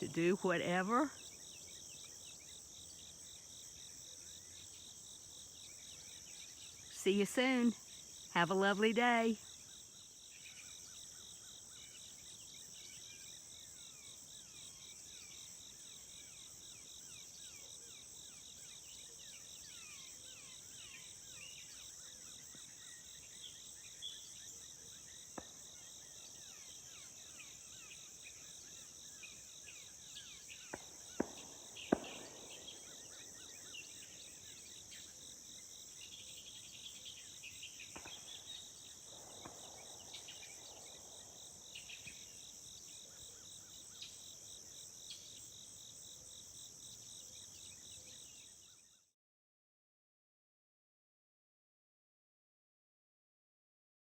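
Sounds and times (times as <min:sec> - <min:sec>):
crickets and insects chorus: 0:00.3 - 0:49.0.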